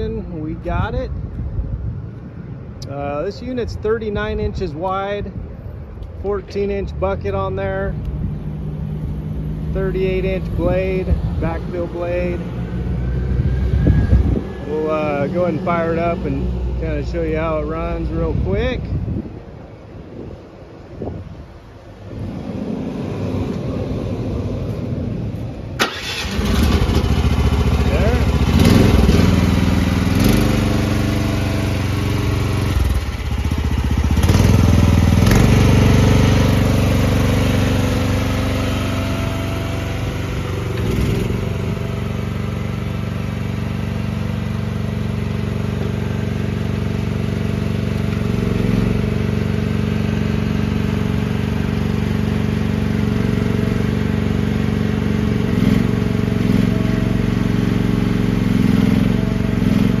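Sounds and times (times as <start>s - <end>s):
small gasoline engine running: 25.8s - 60.0s.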